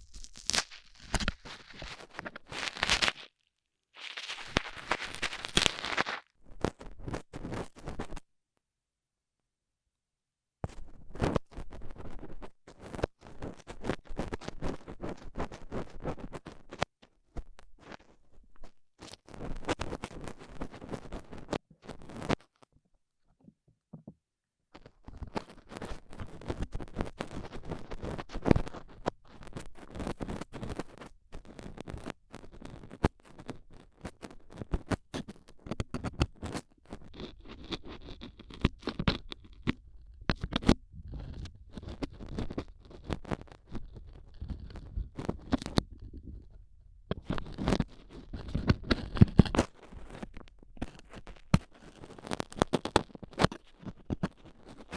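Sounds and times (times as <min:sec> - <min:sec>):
metal pick scratching in ear: 0:04.0 - 0:06.2.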